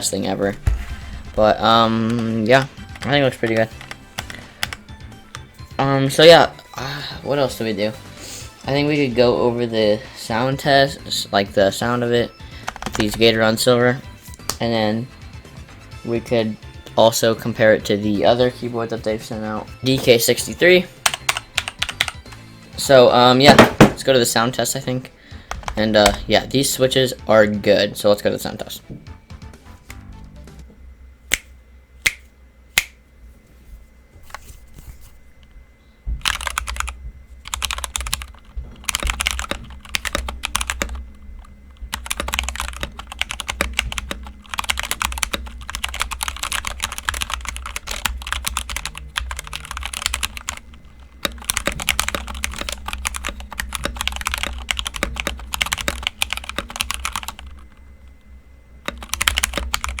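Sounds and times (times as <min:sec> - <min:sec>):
mechanical keyboard typing: 0:01.6 - 0:04.8, 0:12.6 - 0:13.2, 0:21.0 - 0:22.4, 0:36.2 - 0:57.8, 0:58.8 - 1:00.0.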